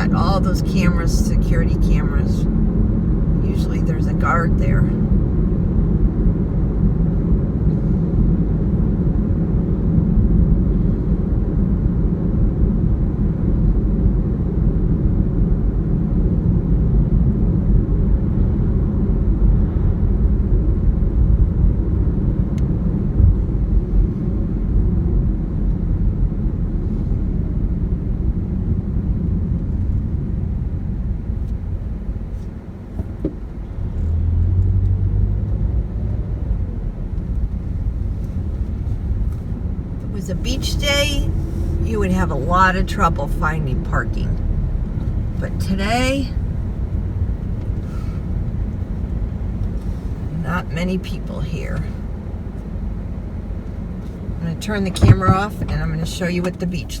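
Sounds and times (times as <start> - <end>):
road and engine rumble in car: 0.0 - 57.0
steady low hum: 36.4 - 57.0.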